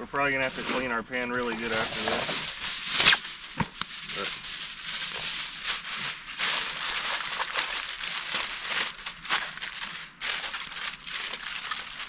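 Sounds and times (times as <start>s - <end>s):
aluminium foil crinkling: 0.1s - 12.0s.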